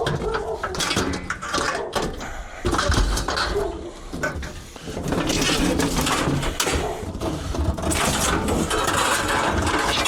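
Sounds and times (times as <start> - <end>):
metal scraping and grinding: 2.7 - 10.0.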